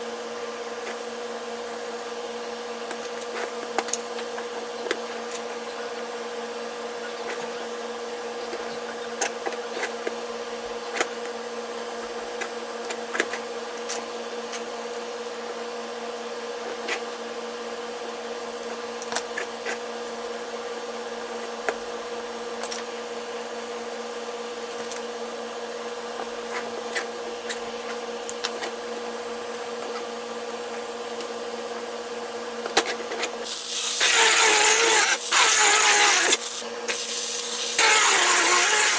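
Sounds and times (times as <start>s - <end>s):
small motor running steadily: 33.4s - 38.9s.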